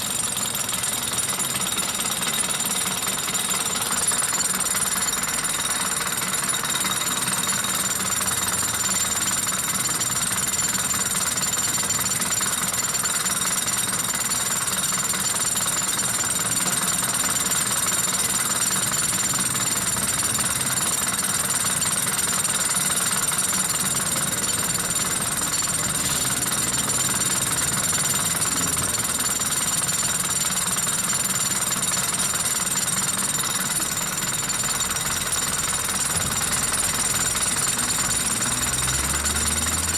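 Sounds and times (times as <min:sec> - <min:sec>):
diesel engine idling: 0:19.6 - 0:30.6, 0:33.8 - 0:39.9.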